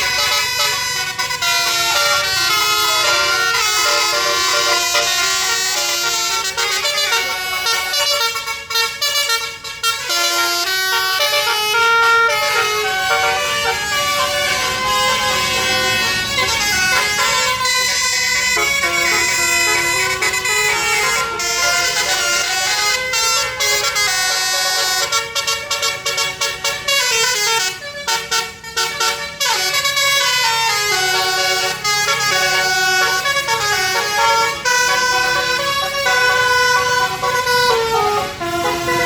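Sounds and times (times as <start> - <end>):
bus musical air horn tune: 0.0 - 39.0.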